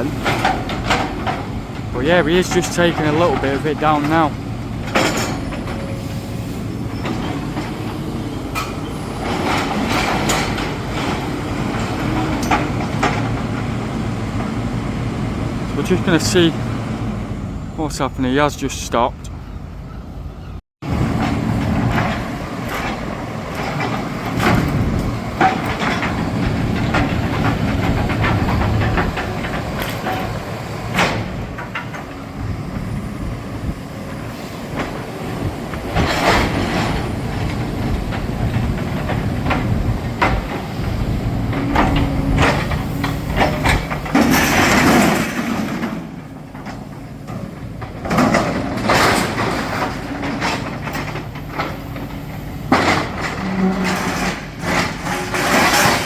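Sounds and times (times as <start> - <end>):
excavator running: 0.0 - 56.0
masonry debris clattering: 41.8 - 51.9, 52.6 - 56.0.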